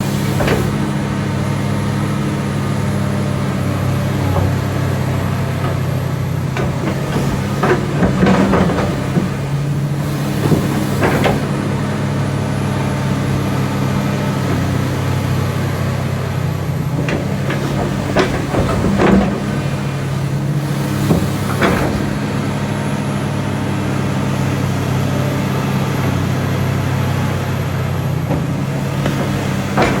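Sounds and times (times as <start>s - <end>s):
excavator diesel engine running: 0.0s - 30.0s
metallic clanks and knocks: 5.6s - 12.0s, 16.9s - 22.6s, 28.3s - 30.0s.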